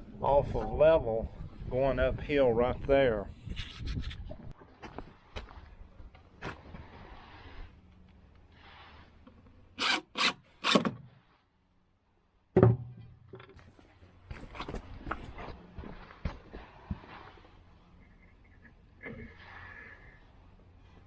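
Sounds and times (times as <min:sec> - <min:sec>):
short scraping strokes: 0:09.8 - 0:11.0.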